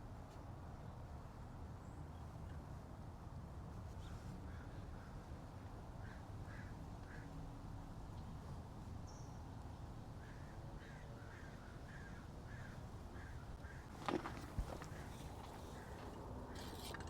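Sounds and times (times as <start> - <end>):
faint bird calls: 10.2 - 16.6.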